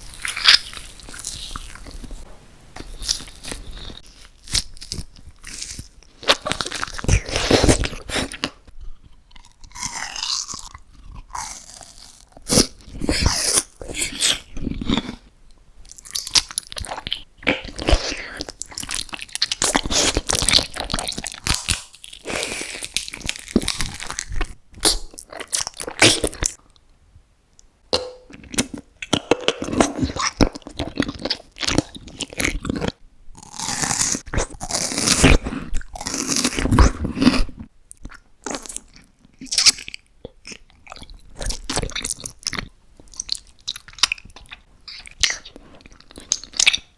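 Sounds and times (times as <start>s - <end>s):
person chewing crunchy food: 0.0s - 26.8s, 28.0s - 46.9s.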